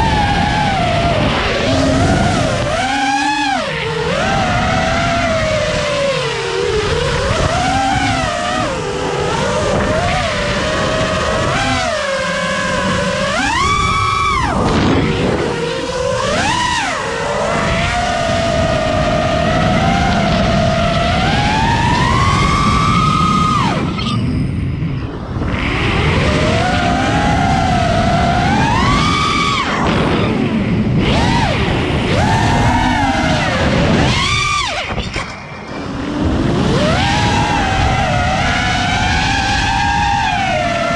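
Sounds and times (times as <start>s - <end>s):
quadcopter motors whining: 0.0s - 40.9s.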